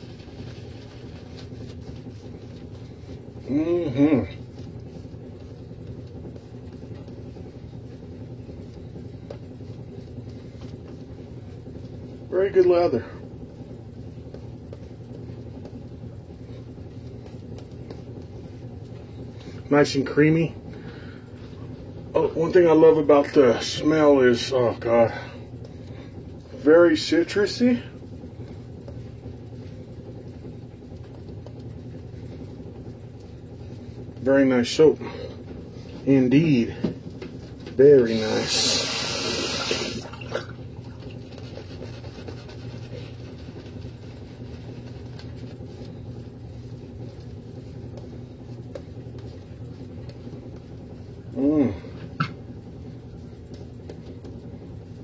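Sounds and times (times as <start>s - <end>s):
low background hum: 0.0s - 55.0s.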